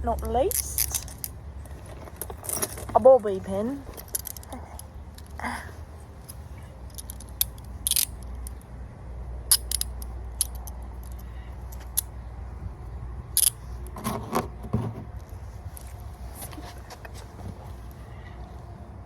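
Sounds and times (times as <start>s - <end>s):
handcuffs clicking and rattling: 0.2s - 3.0s, 3.8s - 5.5s, 6.1s - 8.6s, 9.5s - 12.1s, 13.3s - 14.0s.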